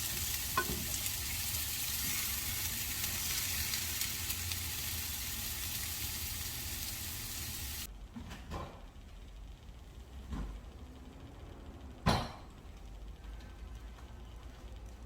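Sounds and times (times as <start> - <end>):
food sizzling in a frying pan: 0.0 - 7.9.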